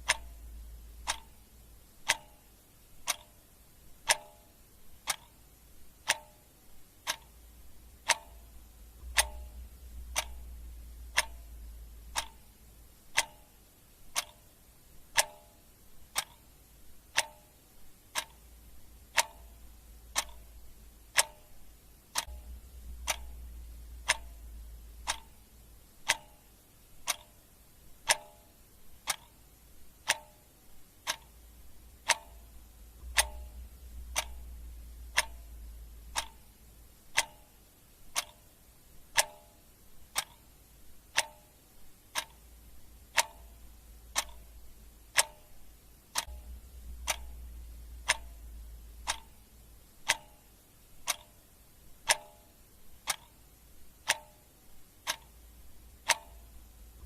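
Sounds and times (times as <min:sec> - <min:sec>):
clock ticking: 0:00.0 - 0:57.0.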